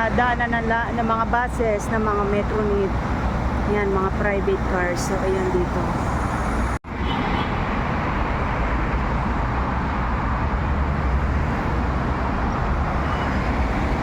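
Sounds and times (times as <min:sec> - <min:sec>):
road traffic noise: 0:00.0 - 0:14.0.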